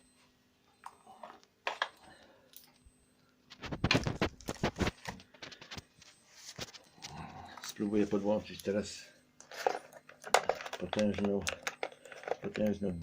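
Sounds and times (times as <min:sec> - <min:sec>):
faint steady hum: 0:00.0 - 0:13.0
clattering and rustling: 0:09.4 - 0:12.5.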